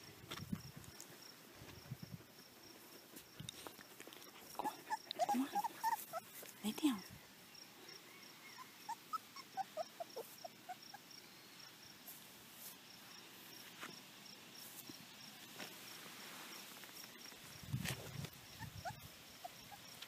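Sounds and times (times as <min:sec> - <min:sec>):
puppies squeaking and whimpering: 0:04.6 - 0:06.5, 0:08.3 - 0:11.1, 0:18.5 - 0:19.8.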